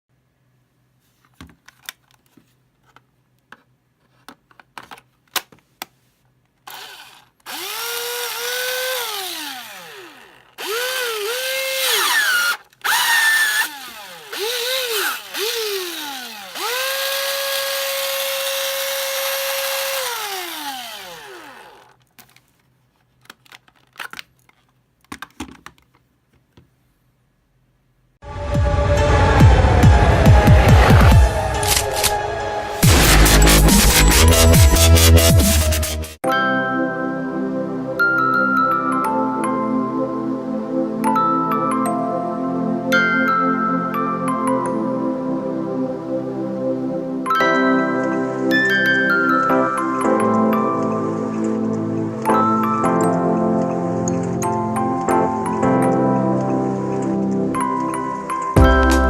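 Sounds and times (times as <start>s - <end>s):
cordless drill motor spinning: 6.7s - 22.0s.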